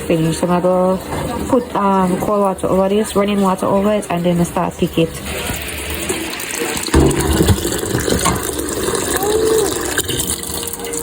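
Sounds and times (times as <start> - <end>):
tap water running into a pot: 0.0 - 11.0.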